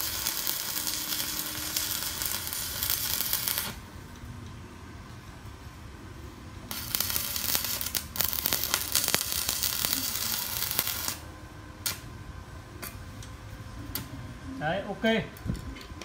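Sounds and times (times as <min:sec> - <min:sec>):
welding arc crackling and sizzling: 0:00.0 - 0:04.3, 0:06.6 - 0:12.1.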